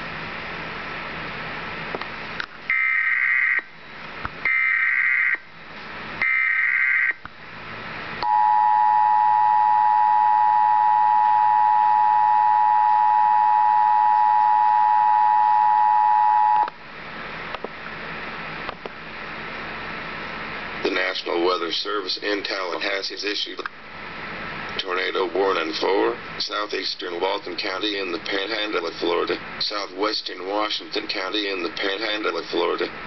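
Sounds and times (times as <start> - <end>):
two-tone attention signal: 8.2 - 16.7
steady hiss: 11.2 - 33.0.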